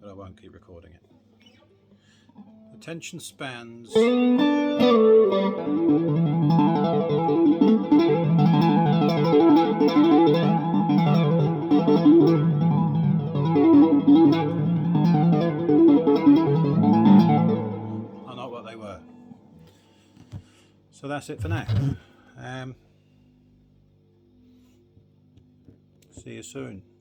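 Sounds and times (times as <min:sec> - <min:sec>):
electric guitar playing: 0:03.9 - 0:19.7.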